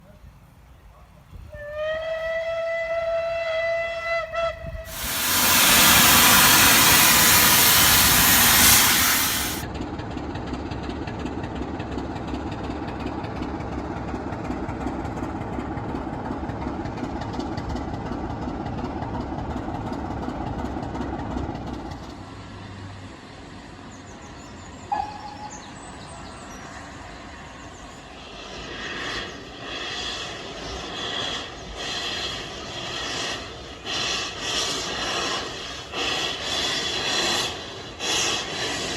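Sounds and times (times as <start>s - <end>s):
steam locomotive hissing steam: 0.0s - 9.7s, 23.2s - 38.9s
train rumbling: 0.3s - 38.9s
train clattering: 4.9s - 22.3s, 28.2s - 38.9s.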